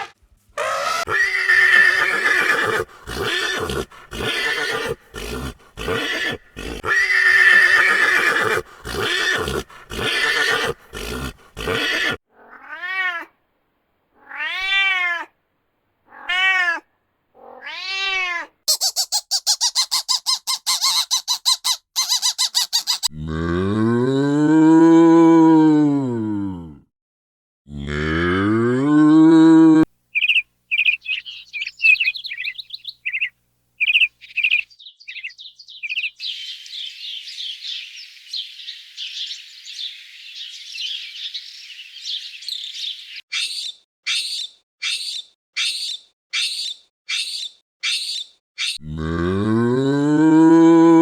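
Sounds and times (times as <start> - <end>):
rough noisy animal calls: 0.0 - 12.2
rising and falling animal calls: 0.0 - 13.0, 30.2 - 49.2
cow mooing: 23.1 - 26.8, 27.7 - 29.8, 48.8 - 51.0.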